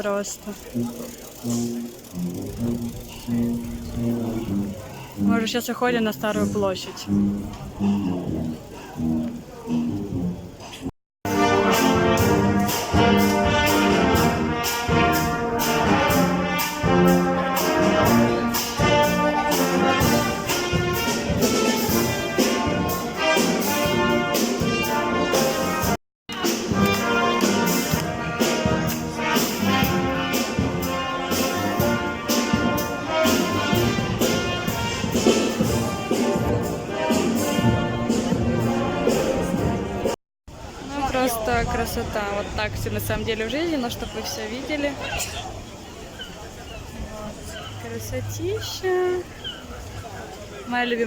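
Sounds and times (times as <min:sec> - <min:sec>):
upbeat brass music with trumpets: 0:00.7 - 0:40.2.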